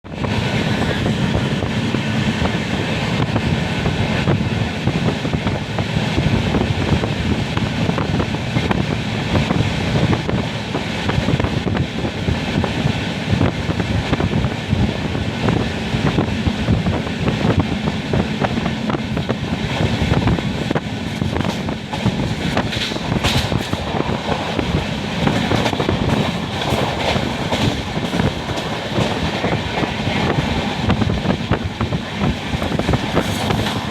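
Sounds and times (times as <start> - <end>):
train rumbling: 0.0 - 33.9
wheels clattering on track: 15.4 - 33.9.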